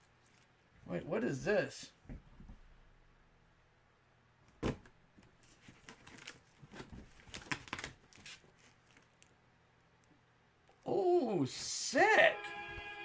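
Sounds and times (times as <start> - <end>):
packaging rustling: 5.5 - 9.4.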